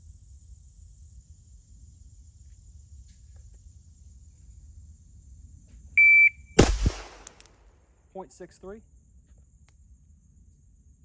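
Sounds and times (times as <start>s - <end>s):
shot timer start beep: 6.0s - 6.4s.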